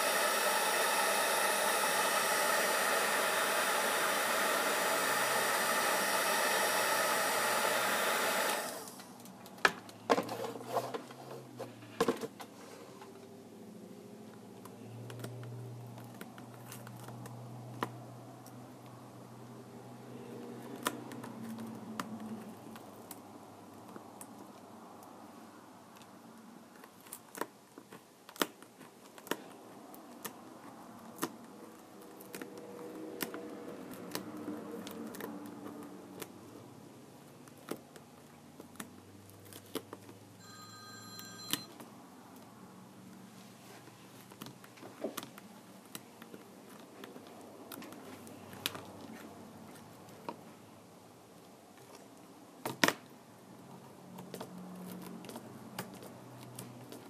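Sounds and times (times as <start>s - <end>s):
short electronic tone: 40.4s - 41.7s.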